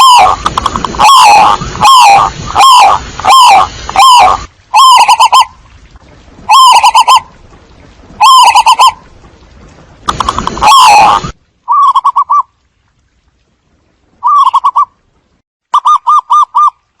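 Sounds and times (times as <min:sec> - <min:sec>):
doves cooing: 0:01.0 - 0:05.5.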